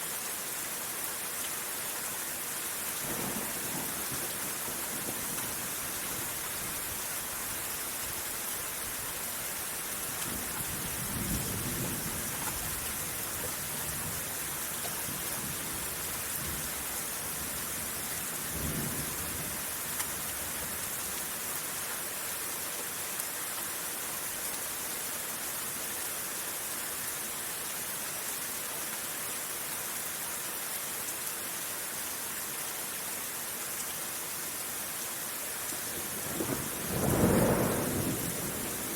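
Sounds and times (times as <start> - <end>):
steady rain hissing: 0.0 - 38.9
thunder rumbling: 36.0 - 38.9.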